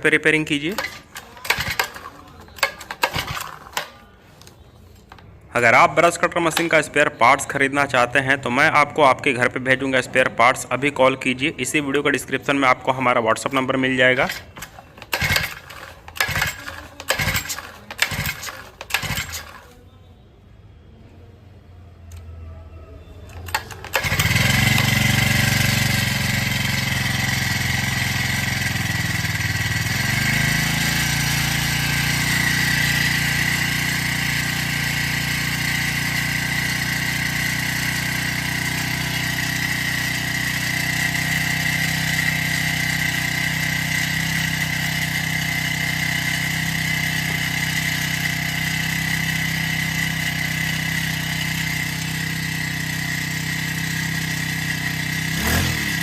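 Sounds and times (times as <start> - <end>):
brush cutter engine running: 0.2 - 5.2, 13.4 - 19.8, 23.3 - 56.0
brush cutter pull-start: 0.3 - 5.2, 6.4 - 6.9, 13.4 - 19.8, 23.3 - 56.0.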